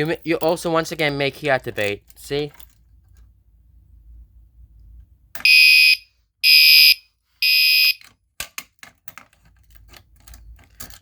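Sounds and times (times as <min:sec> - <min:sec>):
fire alarm horn blasts: 0:05.4 - 0:08.0.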